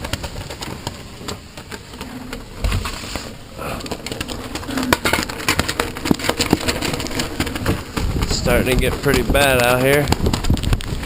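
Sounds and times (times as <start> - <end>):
wind buffeting microphone: 0.0 - 11.0
low moan: 3.2 - 5.5.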